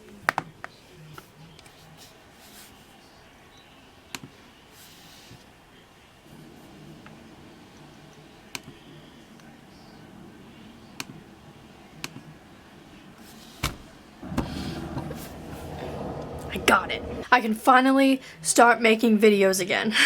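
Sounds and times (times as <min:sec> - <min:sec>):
muffled rustling: 0:12.7 - 0:17.2.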